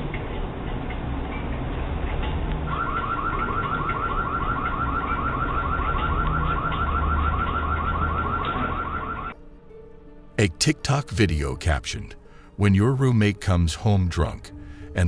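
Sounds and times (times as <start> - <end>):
whooping security siren: 2.7 - 9.4.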